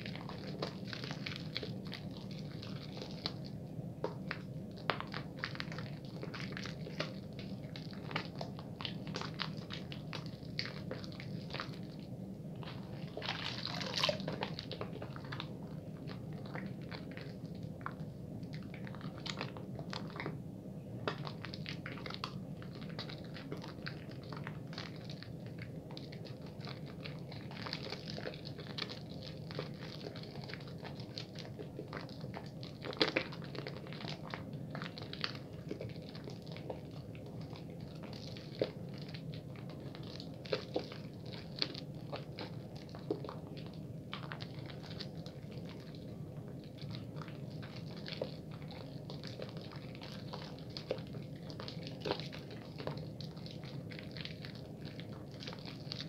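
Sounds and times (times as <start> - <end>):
steady low hum: 0.0 - 56.0
hands lathering wet soap: 4.1 - 20.4.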